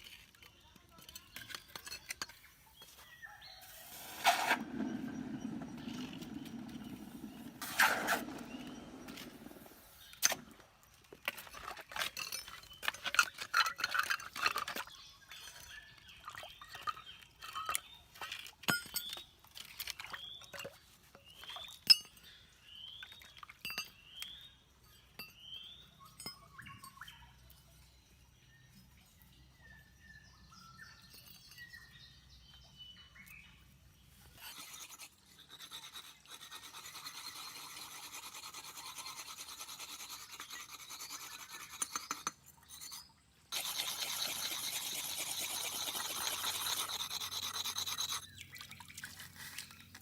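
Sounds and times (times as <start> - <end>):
bird chirping: 0.0 - 10.3, 21.2 - 36.0.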